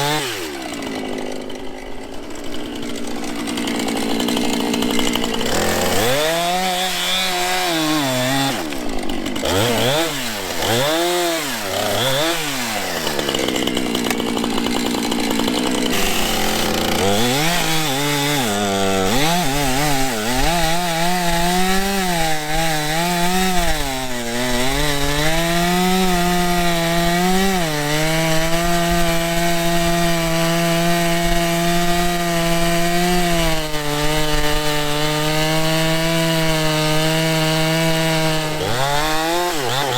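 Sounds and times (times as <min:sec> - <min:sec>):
chainsaw cutting wood: 0:00.0 - 0:39.9.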